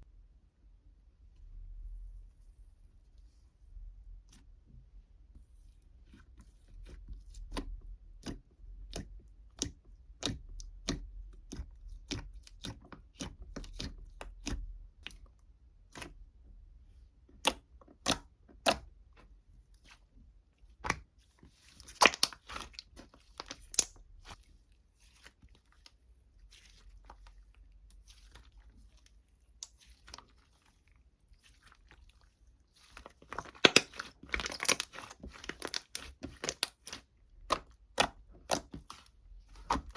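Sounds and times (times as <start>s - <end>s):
crinkling: 21.3s - 39.9s.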